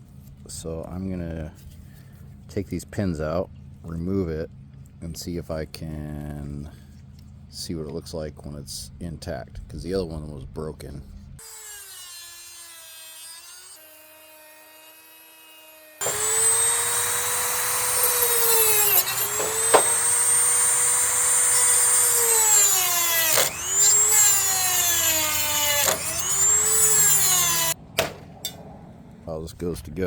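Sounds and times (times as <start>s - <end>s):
power tool motor whining: 14.9s - 27.8s.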